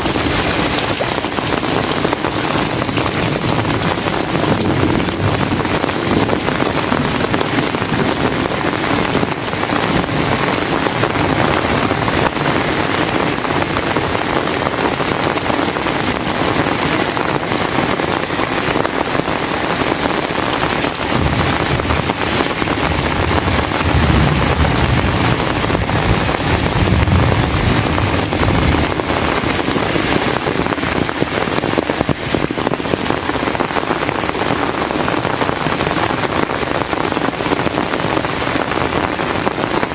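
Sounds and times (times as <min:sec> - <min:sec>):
distant thunder rumble: 0:00.0 - 0:17.1, 0:18.6 - 0:31.4
heavy rain pouring: 0:00.0 - 0:39.9.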